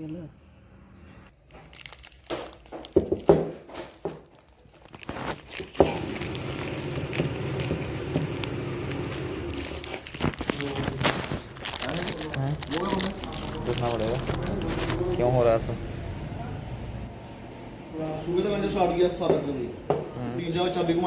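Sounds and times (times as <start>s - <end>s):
motorcycle engine idling with crackle: 4.9s - 15.3s.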